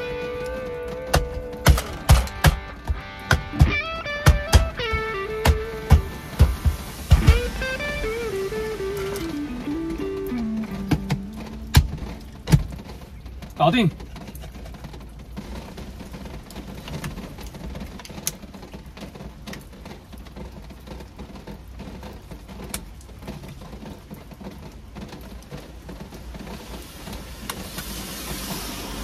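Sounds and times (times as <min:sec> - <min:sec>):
clicks and rustling of parts: 0:00.4 - 0:03.7
hiss: 0:05.6 - 0:09.5, 0:26.2 - 0:29.0.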